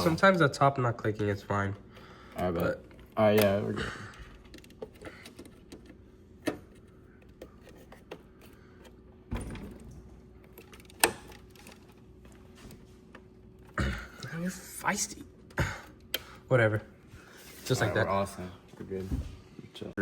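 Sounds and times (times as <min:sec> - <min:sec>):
computer parts clicking and knocking: 0:02.3 - 0:12.4.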